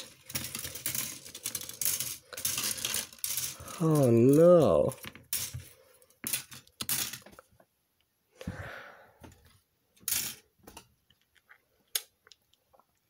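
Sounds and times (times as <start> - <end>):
plastic parts rustling and clacking: 0.0 - 7.7.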